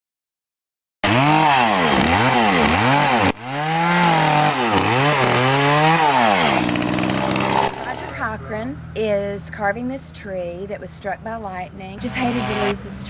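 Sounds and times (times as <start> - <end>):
chainsaw revving: 1.0 - 8.2, 12.0 - 13.0.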